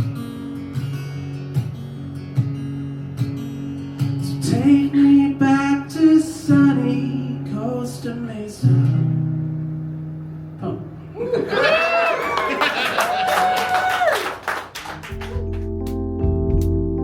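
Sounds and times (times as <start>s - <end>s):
acoustic guitar strumming: 0.0s - 11.1s.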